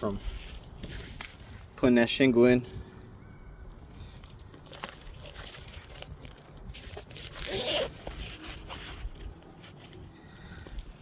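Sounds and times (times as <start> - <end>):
light scuffs and clicks: 0.0 - 1.8, 4.1 - 10.9.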